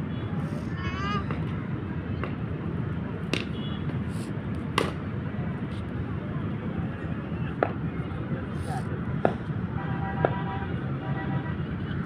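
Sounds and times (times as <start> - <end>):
cricket bat striking ball: 3.3 - 3.6, 4.7 - 5.0.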